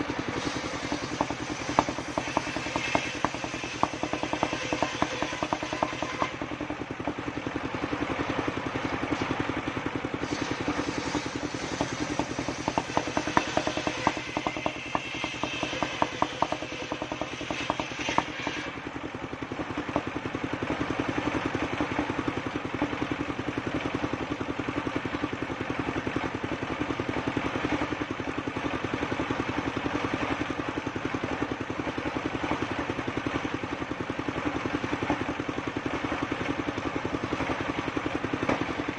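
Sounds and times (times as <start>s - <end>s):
saw blade cutting wood: 0.0s - 7.2s, 10.2s - 18.9s
sawmill engine running: 0.0s - 38.9s.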